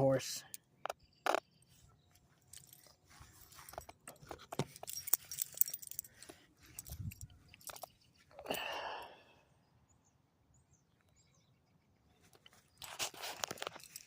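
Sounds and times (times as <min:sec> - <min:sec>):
light clicks and rattles: 0:02.1 - 0:08.2, 0:12.2 - 0:14.0.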